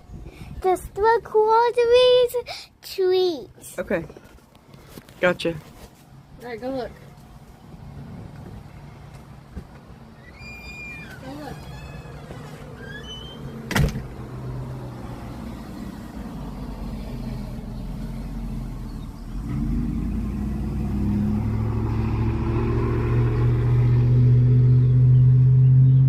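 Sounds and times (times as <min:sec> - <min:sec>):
engine hum: 0:06.0 - 0:26.0.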